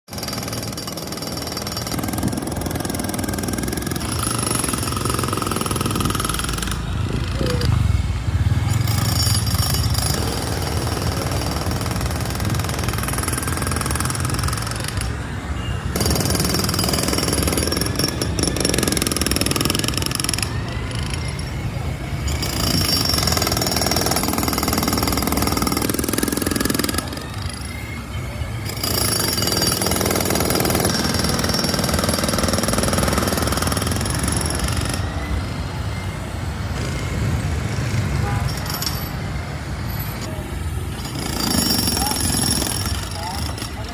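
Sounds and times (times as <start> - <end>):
jackhammer breaking concrete: 0.1 - 6.8, 8.7 - 15.1, 16.0 - 21.4, 22.3 - 27.4, 28.7 - 35.1, 41.0 - 43.9.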